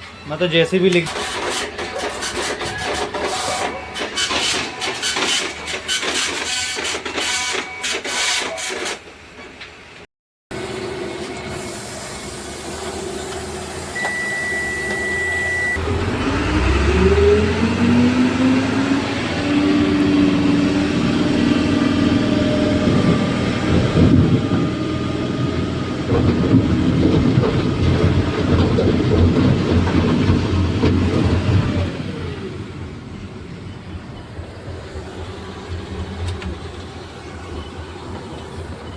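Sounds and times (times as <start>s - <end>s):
heavy diesel machinery running: 0.0s - 8.0s, 10.5s - 38.9s
held beep: 14.0s - 15.8s
engine revving: 15.7s - 32.8s
machinery and rock clattering: 22.3s - 32.7s.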